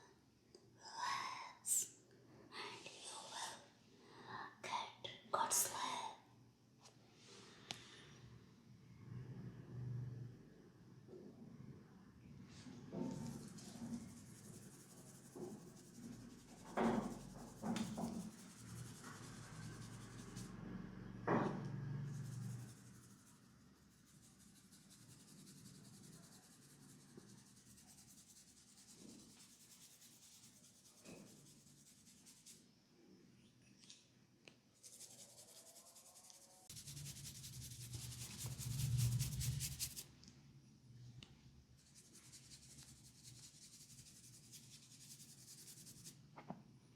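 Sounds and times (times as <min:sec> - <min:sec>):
hands rubbing scalp and hair: 0:34.8 - 0:40.0.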